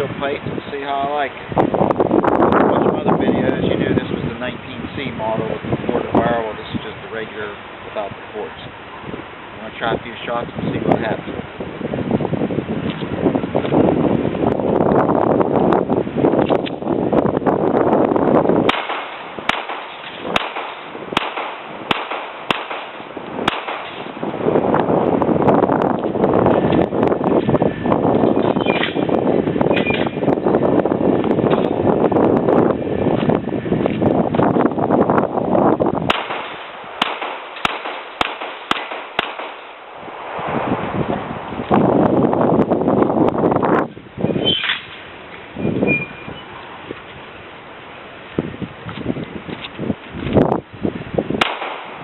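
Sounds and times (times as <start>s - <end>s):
wind noise on microphone: 0.0s - 52.0s
pistol shots: 18.7s - 24.1s, 36.1s - 39.8s, 51.4s - 52.0s.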